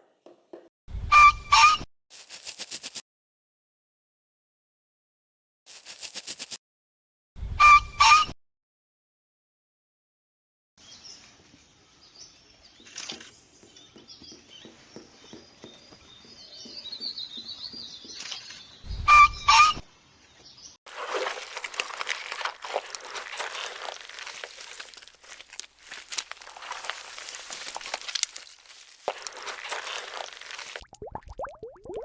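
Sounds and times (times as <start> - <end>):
crunching and rustling of feed: 2.2 - 3.0, 5.7 - 6.6, 20.9 - 30.8
birds chirping: 12.1 - 30.8
birds pecking and tapping: 12.8 - 18.7, 20.9 - 30.8.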